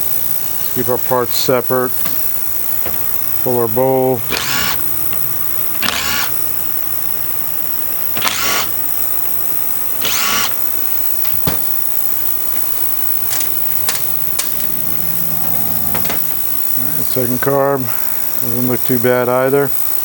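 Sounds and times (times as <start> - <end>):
steady low hum: 0.0 - 20.0
short hissy bursts: 8.2 - 8.8, 10.0 - 10.6.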